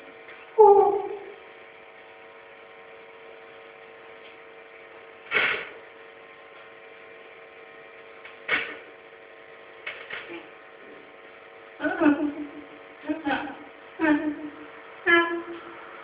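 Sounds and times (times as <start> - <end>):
steady hum: 0.0 - 16.0
short sharp sounds: 5.3 - 5.8.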